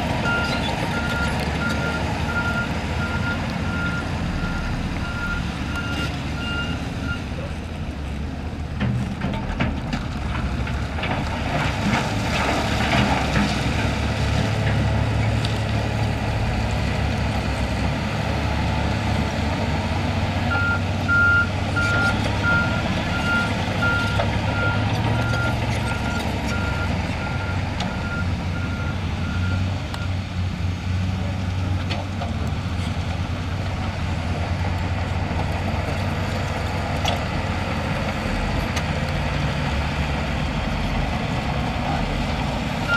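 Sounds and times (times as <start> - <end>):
heavy diesel machine running: 0.0 - 42.9
reversing alarm beeping: 0.2 - 7.3.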